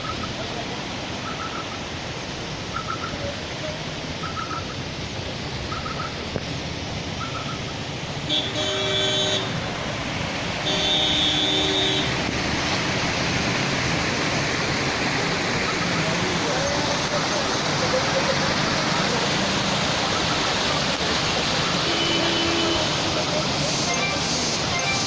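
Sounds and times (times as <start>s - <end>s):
heavy rain hissing: 0.0s - 25.0s
vehicle horn honking: 8.3s - 9.6s, 10.6s - 12.1s, 21.8s - 23.1s.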